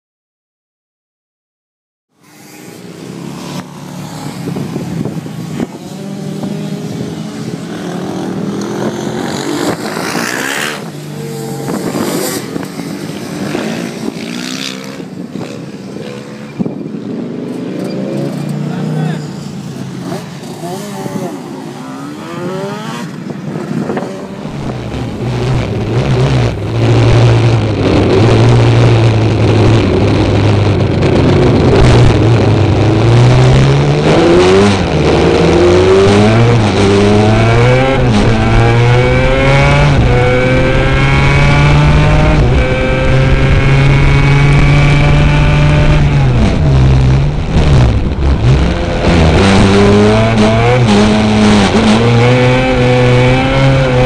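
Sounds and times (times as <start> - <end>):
quad engine revving hard: 20.1 - 23.1, 24.0 - 54.0.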